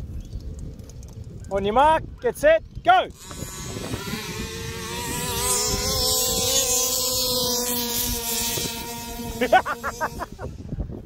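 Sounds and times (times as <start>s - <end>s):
small two-stroke engines droning: 3.1s - 10.7s.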